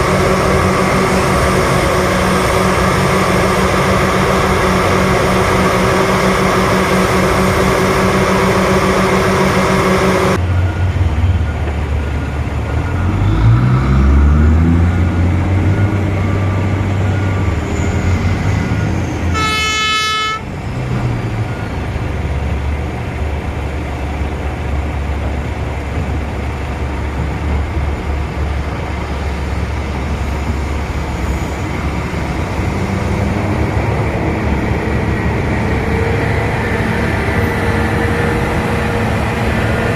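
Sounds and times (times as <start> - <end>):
heavy diesel engines running: 0.0 - 39.9
engine revving: 12.8 - 19.5
horn blast: 19.3 - 20.5.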